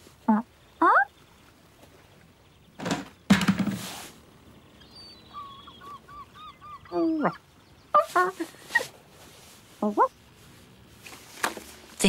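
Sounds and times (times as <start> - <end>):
cartoon thump: 2.8 - 4.0.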